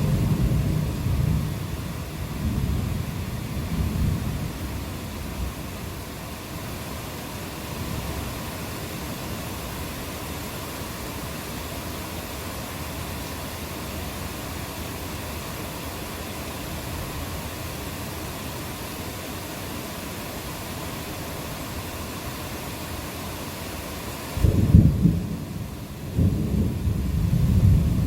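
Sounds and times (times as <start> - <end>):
thunder rumble: 0.0 - 5.6, 24.4 - 28.0
steady rain: 0.0 - 28.0.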